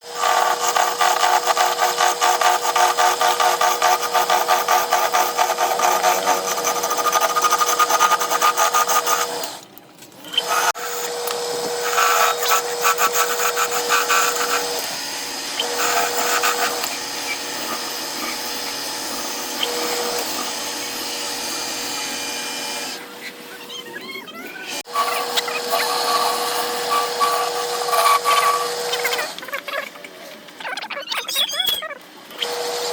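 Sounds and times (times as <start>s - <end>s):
turning tool scraping wood: 0.0s - 9.5s, 10.3s - 14.9s, 15.6s - 22.1s, 24.8s - 29.4s
wood lathe humming: 0.0s - 9.6s, 10.4s - 23.0s, 24.7s - 29.4s.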